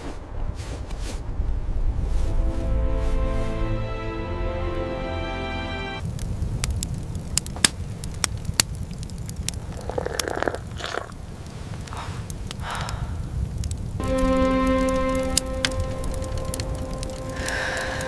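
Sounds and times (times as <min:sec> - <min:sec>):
low rumble: 0:00.1 - 0:05.2, 0:12.6 - 0:18.0
background music: 0:01.9 - 0:06.0, 0:14.0 - 0:18.0
sharp crackles and crunches: 0:06.0 - 0:18.0.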